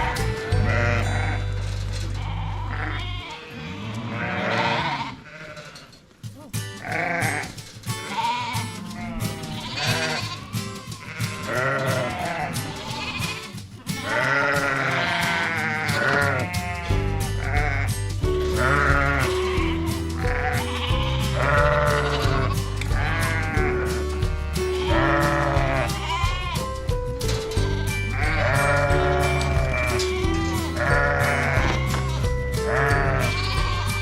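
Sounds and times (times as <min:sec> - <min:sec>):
upbeat background music: 0:00.0 - 0:03.2, 0:06.7 - 0:34.0
sheep and lambs bleating: 0:00.0 - 0:06.0, 0:06.6 - 0:34.0.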